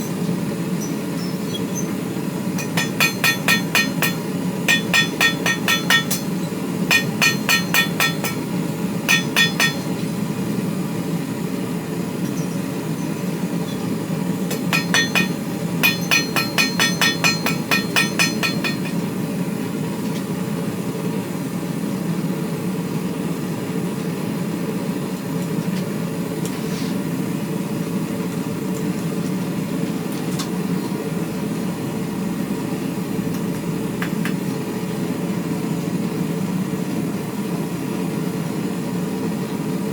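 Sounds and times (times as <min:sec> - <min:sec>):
hammer striking steel on anvil: 0:02.6 - 0:10.2, 0:14.5 - 0:19.2.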